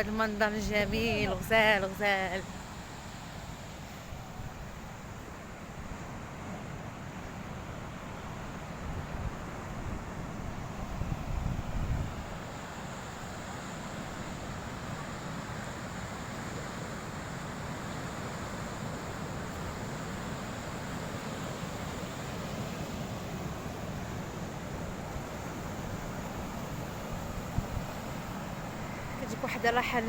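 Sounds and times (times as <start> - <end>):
sea surf: 0.0 - 30.0
wind buffeting microphone: 8.8 - 12.4, 23.5 - 30.0.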